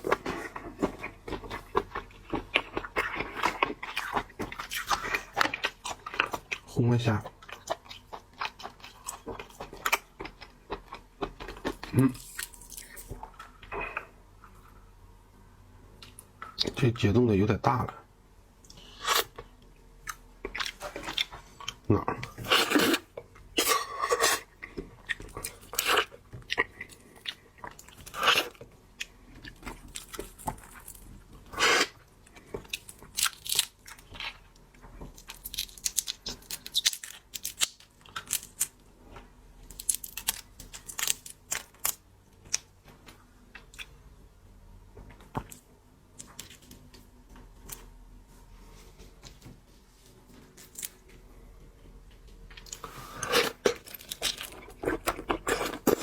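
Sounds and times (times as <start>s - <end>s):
person crunching and chewing food: 0.0s - 14.7s, 18.7s - 44.0s, 52.4s - 56.0s.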